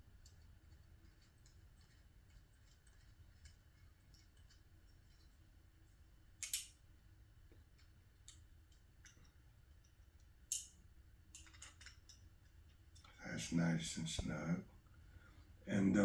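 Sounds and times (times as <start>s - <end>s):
screwdriver clicks and scrapes: 6.4s - 6.8s
small metal parts clicking: 6.4s - 6.8s, 7.8s - 12.3s.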